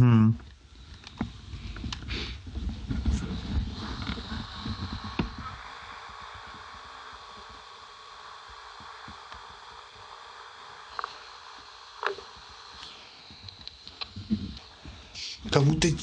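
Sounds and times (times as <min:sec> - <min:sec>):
electronic hiss: 0:00.4 - 0:16.0
faint steady tones: 0:02.6 - 0:16.0.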